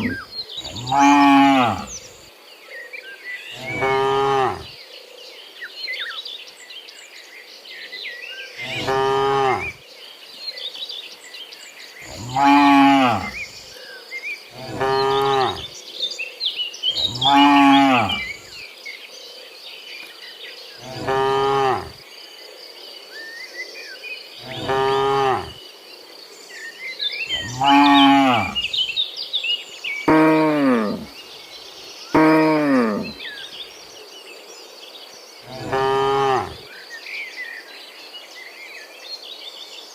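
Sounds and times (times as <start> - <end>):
cows mooing: 0.0 - 2.1, 3.6 - 4.7, 8.6 - 9.8, 12.0 - 13.5, 14.6 - 15.7, 17.0 - 18.4, 20.8 - 22.0, 24.4 - 25.6, 27.3 - 28.8, 30.1 - 31.1, 32.2 - 33.2, 35.5 - 36.6.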